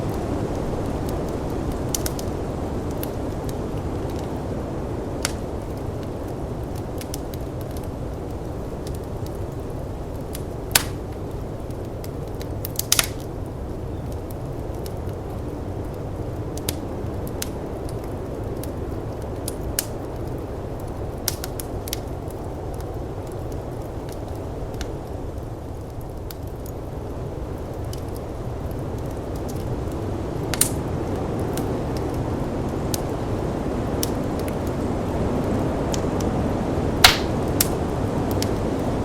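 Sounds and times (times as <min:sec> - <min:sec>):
wood fire crackling: 0:00.0 - 0:39.0
blizzard wind rushing: 0:26.9 - 0:39.0.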